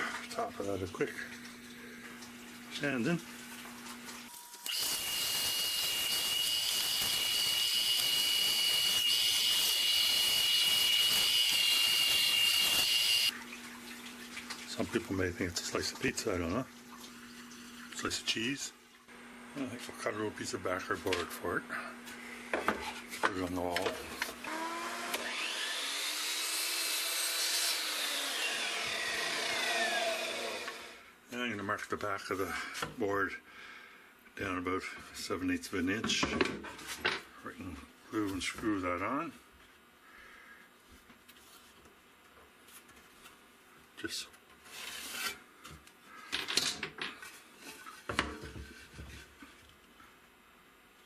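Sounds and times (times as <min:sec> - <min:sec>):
electric saw cutting wood: 0:04.3 - 0:13.3, 0:24.4 - 0:31.1
power sander on wood: 0:04.7 - 0:13.3, 0:24.5 - 0:31.0.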